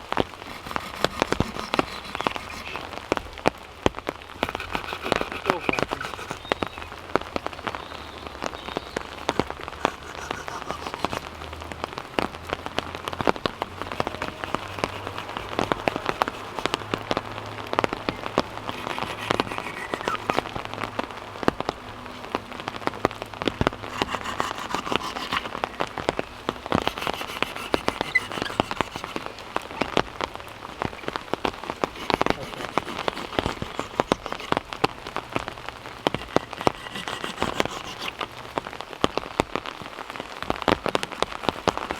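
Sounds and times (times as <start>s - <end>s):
heavy rain falling: 15.4s - 18.7s, 38.2s - 41.9s.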